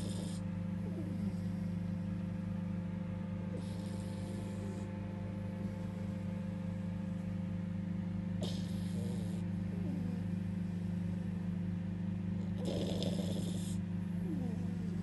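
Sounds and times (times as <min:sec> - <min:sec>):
dog snoring: 0:00.0 - 0:02.6, 0:03.4 - 0:05.0, 0:08.4 - 0:11.3, 0:12.3 - 0:15.0
steady low hum: 0:00.0 - 0:15.0.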